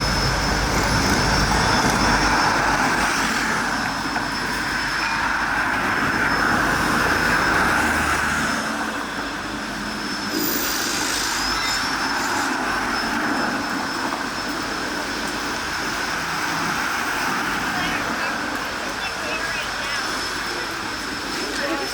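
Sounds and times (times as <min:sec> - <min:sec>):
tram rolling on rails: 0:00.0 - 0:21.9
high-pitched wheel squeal: 0:09.9 - 0:14.4.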